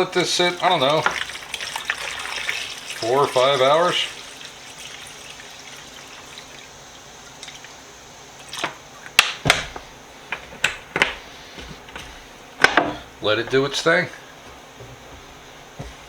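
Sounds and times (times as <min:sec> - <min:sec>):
liquid dripping: 0:00.0 - 0:08.8
faint steady hiss: 0:00.0 - 0:16.0.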